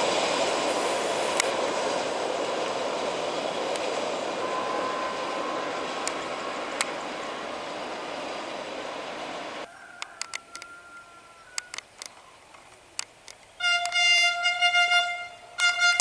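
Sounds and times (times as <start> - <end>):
train wheels rumbling on rails: 0.0 - 10.8.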